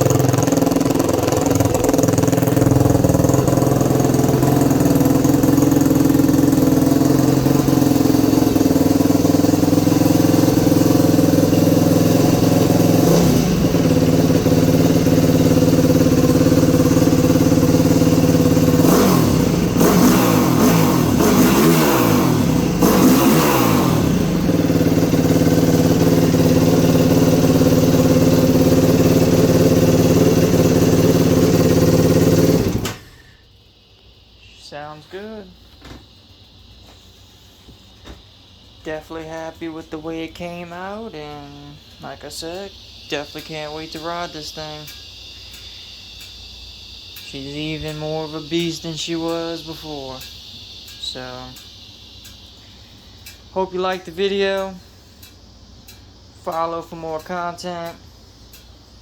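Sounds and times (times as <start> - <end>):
quad engine idling and revving: 0.0 - 33.2, 46.4 - 51.7.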